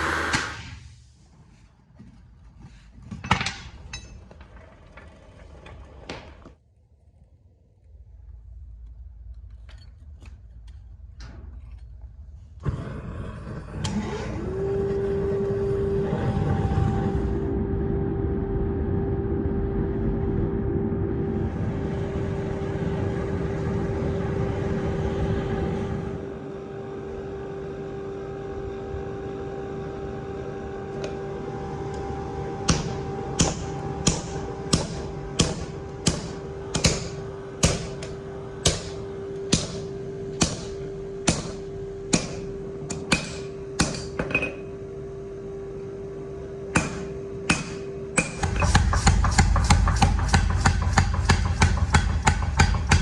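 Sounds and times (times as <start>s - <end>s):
loud rushing noise: 0.0s - 0.8s
machine hum: 0.0s - 53.0s
hammer striking steel on anvil: 32.7s - 44.7s, 46.7s - 53.0s.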